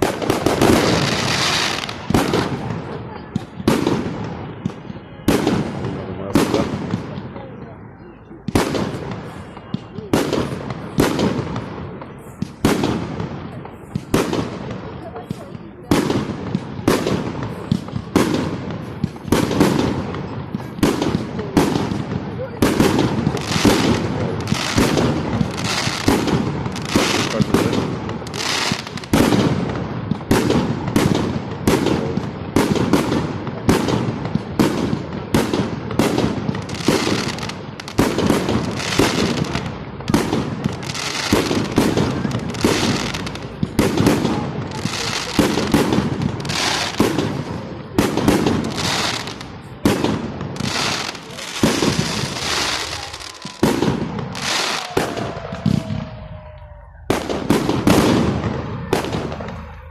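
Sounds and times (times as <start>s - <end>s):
fireworks bangs: 0.0s - 59.9s
falling firework whistle: 50.7s - 58.0s.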